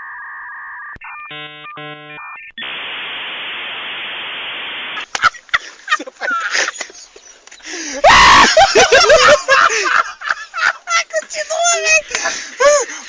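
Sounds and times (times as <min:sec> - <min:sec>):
steady electronic tone: 0:00.0 - 0:05.0
switching buzzy electronic tones: 0:00.0 - 0:05.1
static hiss: 0:02.0 - 0:07.6.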